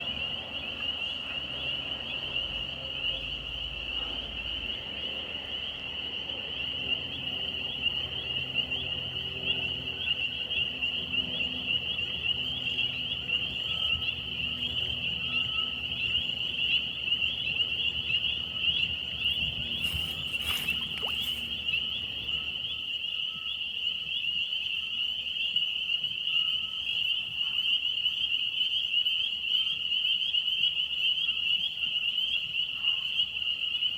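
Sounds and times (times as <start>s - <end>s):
chorus of frogs trilling: 0.0s - 33.9s
brief rustle or clatter: 19.7s - 21.6s.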